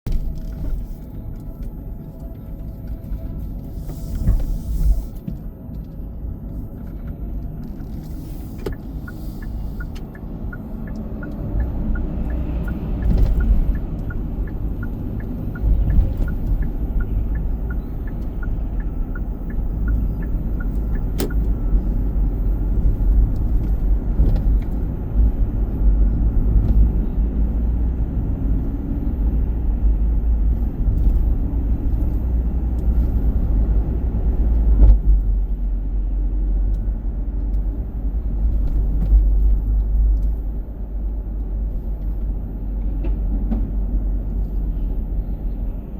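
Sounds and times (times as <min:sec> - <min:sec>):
road and engine rumble: 0:00.0 - 0:45.9
turn signal ticking: 0:00.1 - 0:24.9.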